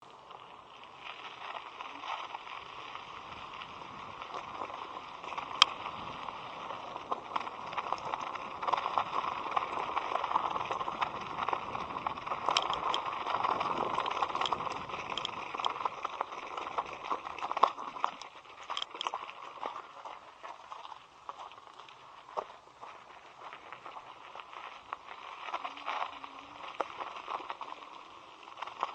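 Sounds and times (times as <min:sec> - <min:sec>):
tyre noise: 0:00.0 - 0:28.9
rush of wind: 0:02.4 - 0:17.1
small clicks and knocks: 0:12.4 - 0:13.1, 0:13.8 - 0:19.8.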